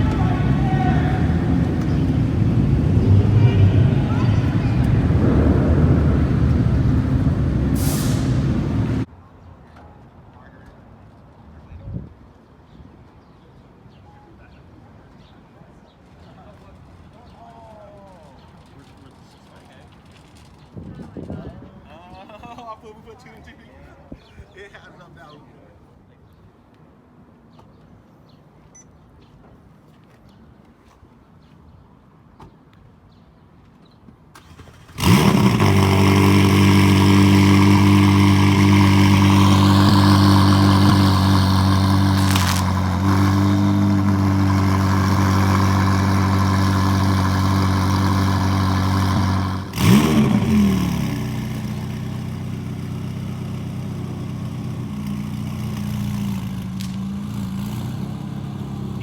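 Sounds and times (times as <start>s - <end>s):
car engine starting and idling: 0.0s - 9.1s, 34.4s - 59.0s.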